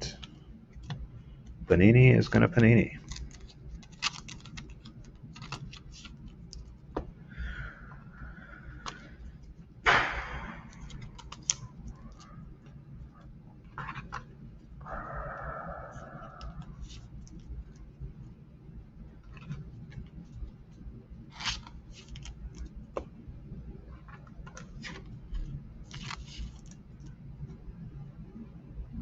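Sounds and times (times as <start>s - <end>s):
cards sliding rustle: 21.3s - 22.7s, 24.0s - 26.8s.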